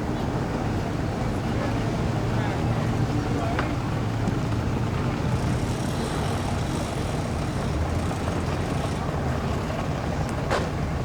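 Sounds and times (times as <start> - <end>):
engines rumbling: 2.7 - 11.0.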